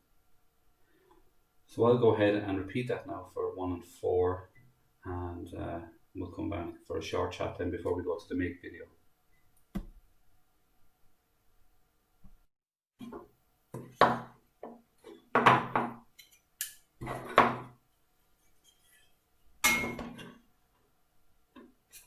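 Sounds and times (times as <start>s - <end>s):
wood and tools knocking on workbench: 15.4s - 16.0s.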